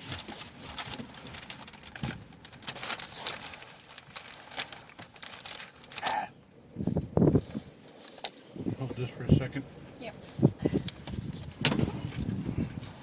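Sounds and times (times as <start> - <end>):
takeout packaging crinkling: 0.0 - 6.3.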